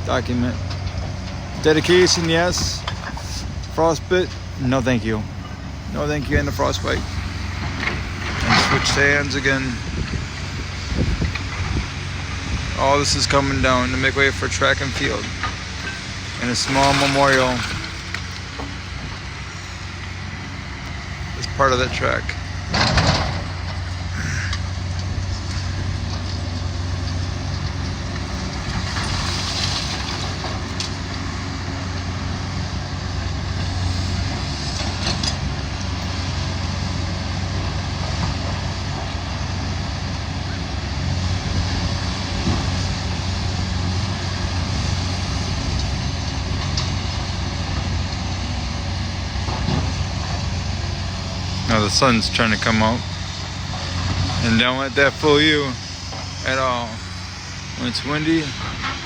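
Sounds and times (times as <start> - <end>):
diesel engine droning: 0.0 - 59.0.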